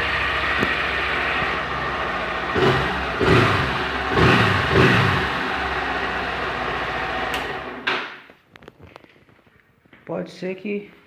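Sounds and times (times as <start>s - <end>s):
engine throttle blips: 0.0s - 7.9s
motorcycle engine idling: 0.0s - 7.9s.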